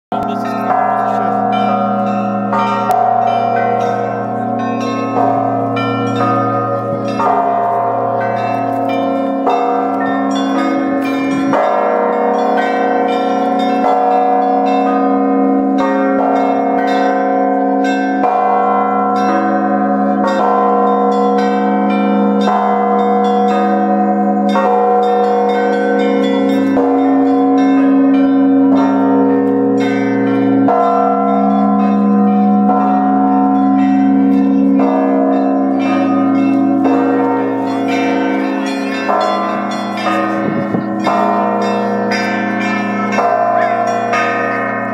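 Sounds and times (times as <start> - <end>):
large church bell ringing: 0.1 - 44.9
small bells ringing quickly: 28.7 - 44.9.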